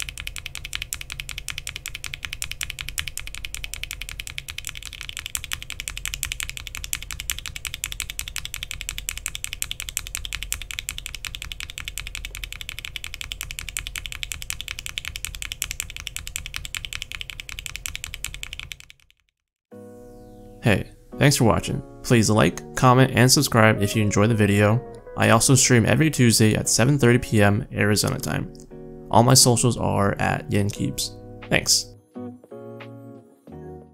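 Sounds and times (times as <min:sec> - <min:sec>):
fast typing on mechanical keyboard: 0:00.0 - 0:19.3.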